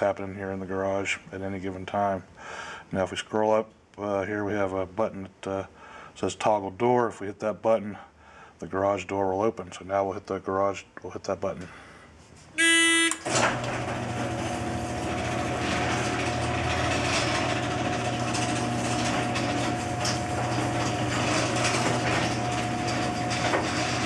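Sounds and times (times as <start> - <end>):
buzzer: 12.6 - 13.3
garage door opener motor humming: 12.6 - 24.0.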